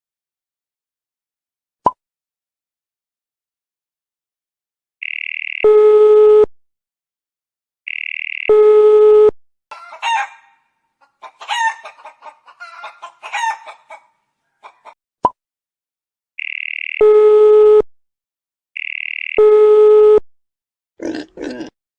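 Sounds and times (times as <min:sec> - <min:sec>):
rooster crowing: 0:09.7 - 0:10.6, 0:11.3 - 0:14.0.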